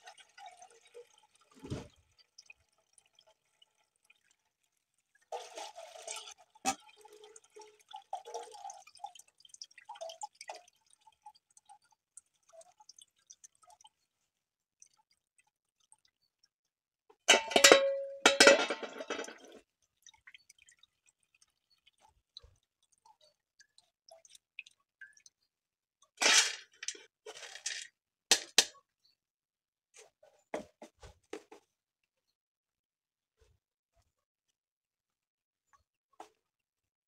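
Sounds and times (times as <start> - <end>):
metal pot and strainer clattering: 17.3 - 19.6, 26.2 - 28.7.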